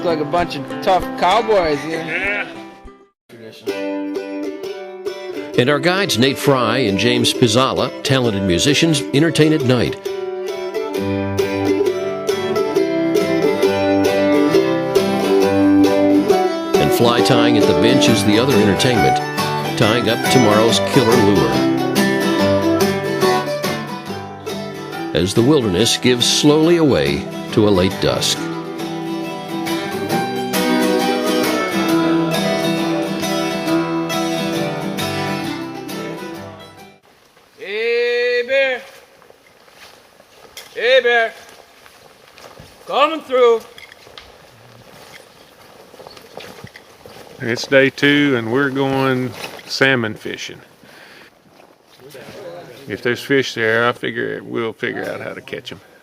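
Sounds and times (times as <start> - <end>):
bluegrass string music: 0.0 - 37.0, 39.6 - 51.2
strummed acoustic guitar: 0.0 - 37.0.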